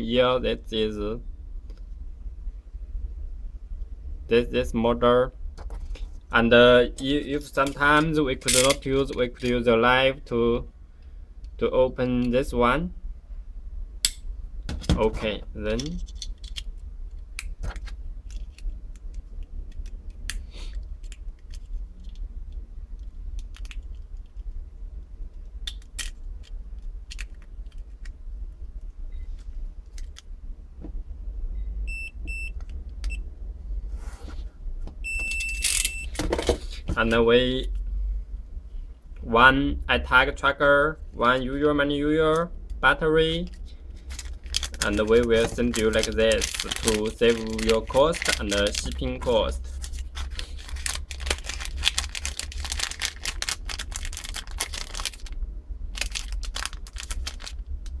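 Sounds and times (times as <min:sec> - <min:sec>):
plastic packaging crinkling: 0:43.4 - 0:58.0.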